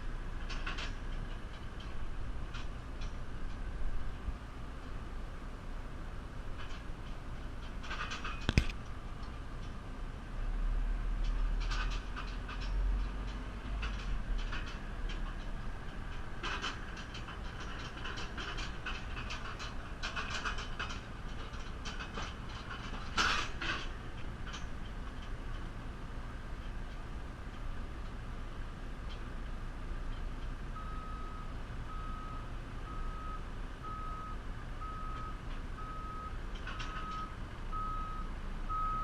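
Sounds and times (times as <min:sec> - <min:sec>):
diesel engine rumbling: 0:00.0 - 0:39.0
metallic clicks and rattles: 0:00.4 - 0:03.6, 0:06.5 - 0:09.8, 0:11.2 - 0:25.7, 0:36.5 - 0:37.3.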